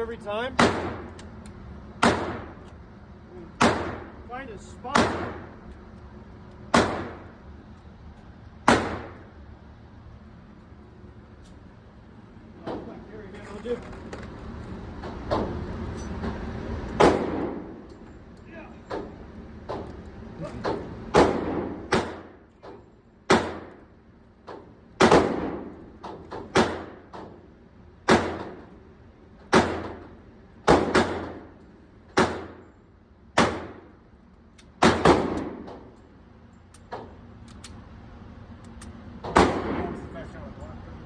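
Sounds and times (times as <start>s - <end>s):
pistol shots echoing indoors: 6.7s - 7.3s.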